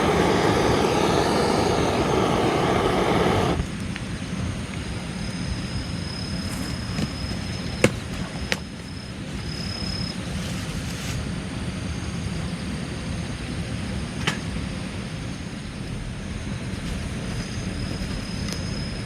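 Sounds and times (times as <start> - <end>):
thin high steady tone: 0.0 - 3.6
steady low rumble: 0.0 - 9.4, 14.8 - 19.0.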